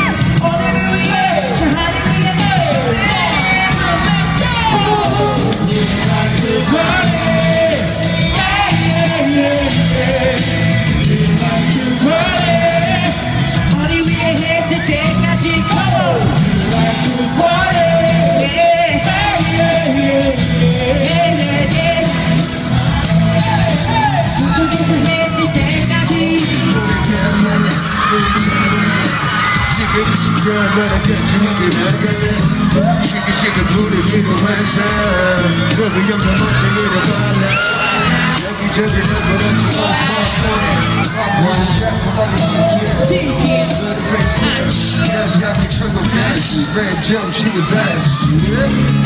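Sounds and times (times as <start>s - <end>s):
crowd screaming: 0.0s - 49.0s
live pop music: 0.0s - 49.0s
person singing: 0.0s - 49.0s.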